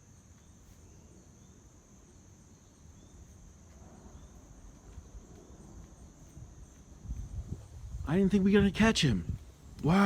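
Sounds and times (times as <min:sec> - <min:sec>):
bird chirps: 0:00.0 - 0:03.4
crickets chirping: 0:00.0 - 0:10.0.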